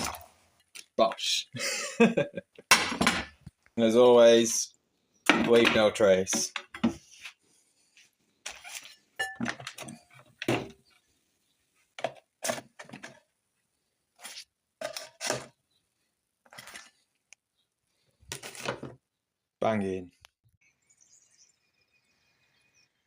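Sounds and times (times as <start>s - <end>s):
cookware clinking and knocking: 2.7s - 3.4s, 9.2s - 10.8s.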